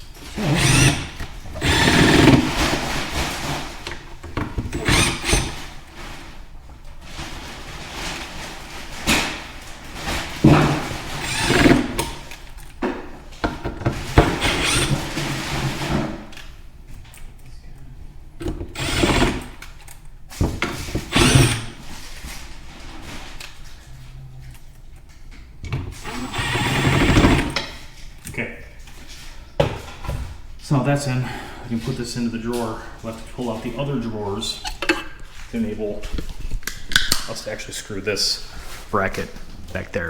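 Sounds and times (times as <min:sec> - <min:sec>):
cordless drill driving screws: 0:00.3 - 0:05.8, 0:10.8 - 0:12.4, 0:14.0 - 0:16.0, 0:18.4 - 0:19.7, 0:20.4 - 0:21.9, 0:26.0 - 0:27.7.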